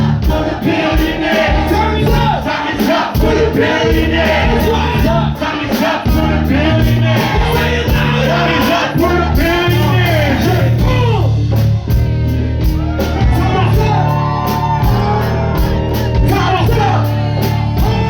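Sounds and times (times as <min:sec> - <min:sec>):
people singing: 0:00.0 - 0:10.9
crowd noise: 0:00.0 - 0:18.0
live band music: 0:00.0 - 0:18.0.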